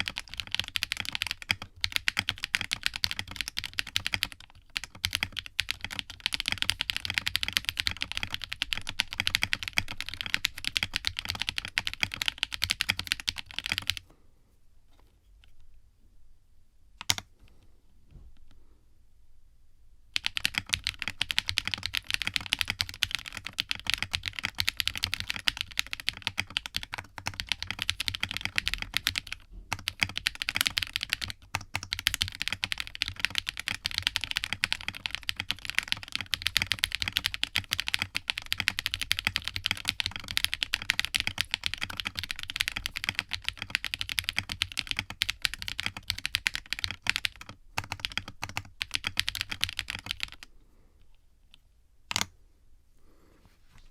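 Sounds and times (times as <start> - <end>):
fast typing on mechanical keyboard: 0.0 - 14.0, 17.0 - 17.3, 20.2 - 50.5, 52.1 - 52.3.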